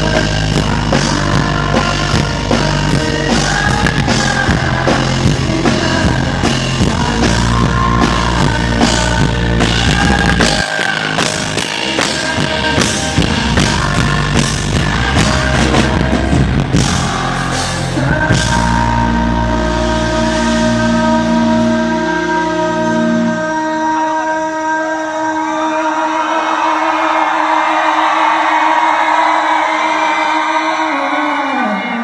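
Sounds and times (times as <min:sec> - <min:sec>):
drum kit hits: 0:00.0 - 0:19.1
live rock band playing: 0:00.0 - 0:24.1
electric guitars: 0:00.0 - 0:24.3.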